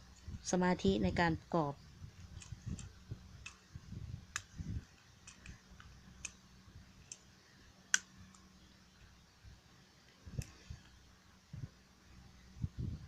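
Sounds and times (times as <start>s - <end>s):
plastic toy parts clicking: 5.2s - 6.4s.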